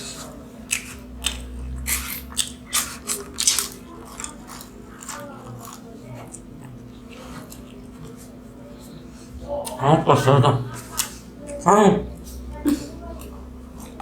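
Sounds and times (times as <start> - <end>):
crunching fried flatbread: 0.0 - 6.4
soft chewing: 0.0 - 14.0.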